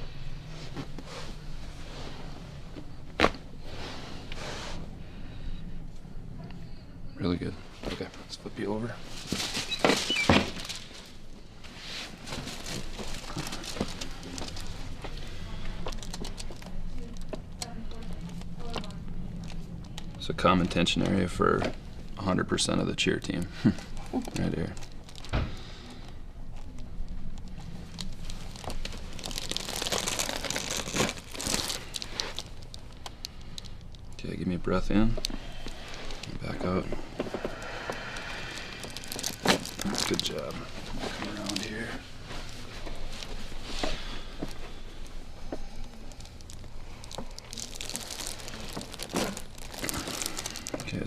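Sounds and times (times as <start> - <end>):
clothing rustling on treatment table: 0.4 - 4.9, 9.0 - 16.4, 27.5 - 33.0, 35.5 - 51.0.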